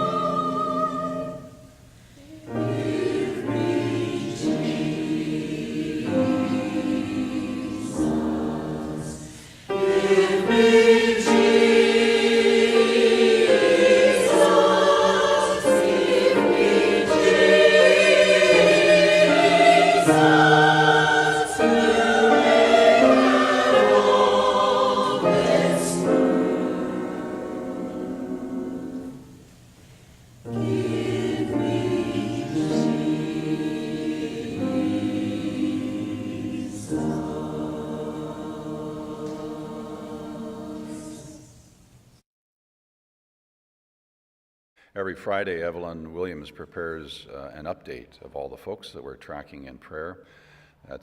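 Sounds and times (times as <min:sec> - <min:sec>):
church choir singing a hymn: 0:00.0 - 0:29.4, 0:30.4 - 0:41.8.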